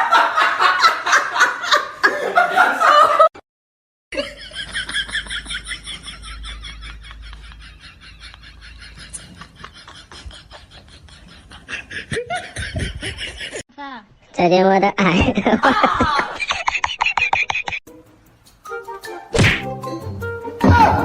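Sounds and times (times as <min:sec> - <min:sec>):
person laughing hard: 0:00.0 - 0:03.3, 0:04.2 - 0:13.6.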